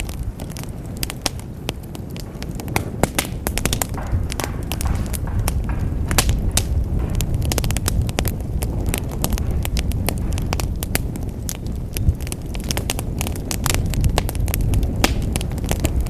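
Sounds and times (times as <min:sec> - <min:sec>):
low rumble: 0:00.0 - 0:16.0
wood fire crackling and popping: 0:00.0 - 0:16.0.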